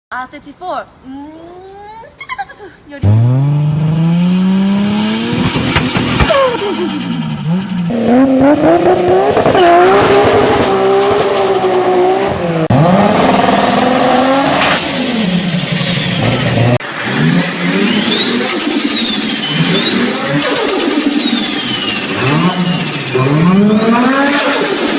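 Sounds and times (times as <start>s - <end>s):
car engines revving: 3.0s - 24.9s
turbo whistle: 17.8s - 24.9s.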